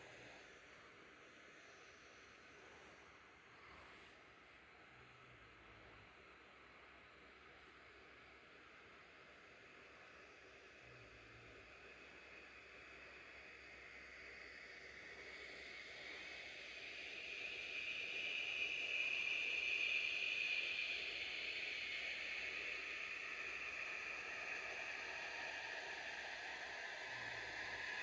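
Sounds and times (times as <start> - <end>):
hiss: 9.2 - 28.0.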